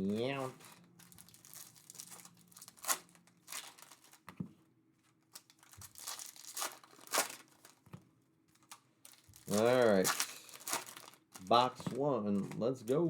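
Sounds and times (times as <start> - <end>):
card packaging tearing and crinkling: 0.0 - 4.3, 5.2 - 7.8, 8.5 - 13.0.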